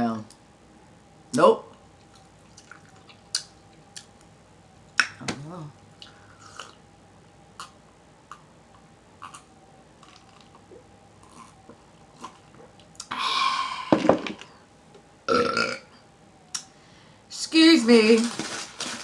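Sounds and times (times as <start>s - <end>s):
chewing and lip-smacking: 2.0s - 4.3s, 9.2s - 11.6s
breathy sound: 13.1s - 14.6s
burp: 15.3s - 15.9s.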